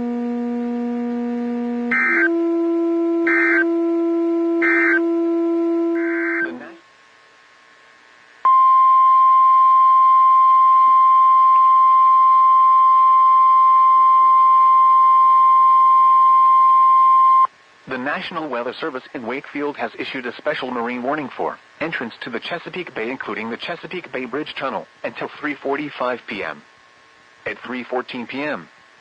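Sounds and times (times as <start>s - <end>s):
loud single-pitch warning alarm: 0.0s - 6.7s, 8.5s - 17.5s
steady droning tone: 0.0s - 17.5s.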